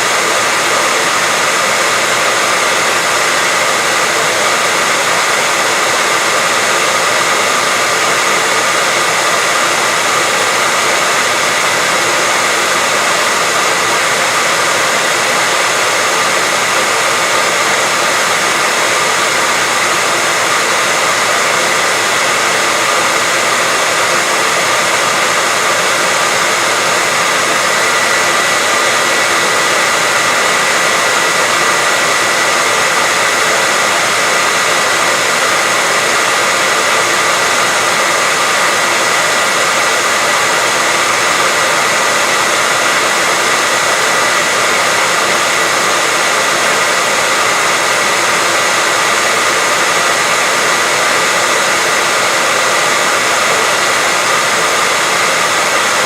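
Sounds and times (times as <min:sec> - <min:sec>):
white noise hiss: 0:00.0 - 0:56.0.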